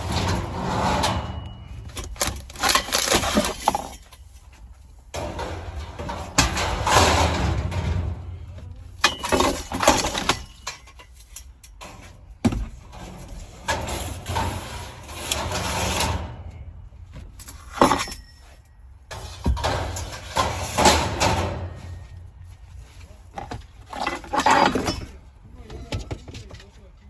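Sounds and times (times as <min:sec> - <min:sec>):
low rumble: 0:00.0 - 0:02.3, 0:05.2 - 0:09.0
metal knocks and clangs: 0:00.0 - 0:22.7, 0:23.3 - 0:26.7
metal scraping: 0:00.0 - 0:25.3.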